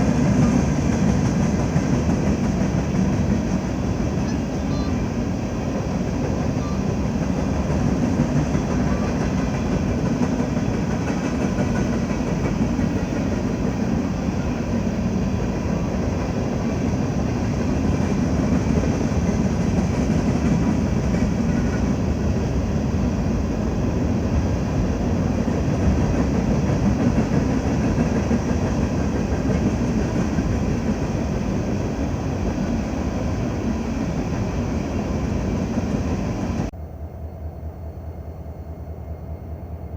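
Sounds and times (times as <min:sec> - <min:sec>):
train wheels rumbling on rail: 0:00.0 - 0:37.8.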